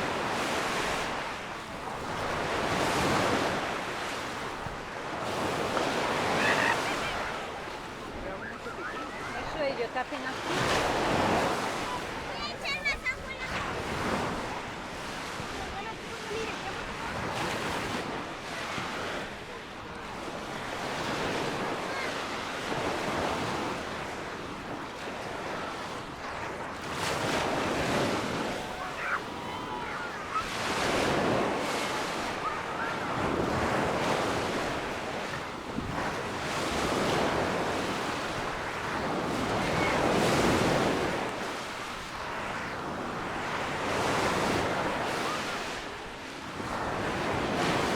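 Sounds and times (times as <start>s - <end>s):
waves washing on sandy beach: 0.0s - 47.9s.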